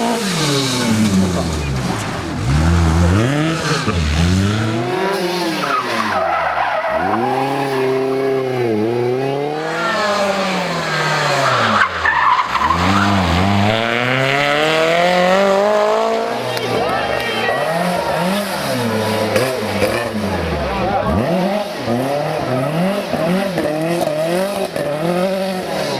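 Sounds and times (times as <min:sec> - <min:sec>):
rally car engine revving: 0:00.0 - 0:25.9.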